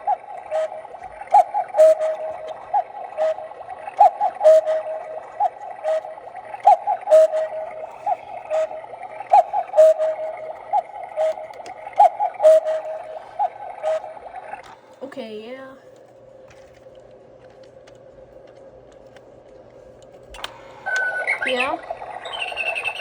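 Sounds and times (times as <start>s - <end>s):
electronic cuckoo call: 0.0s - 14.7s, 20.7s - 23.0s.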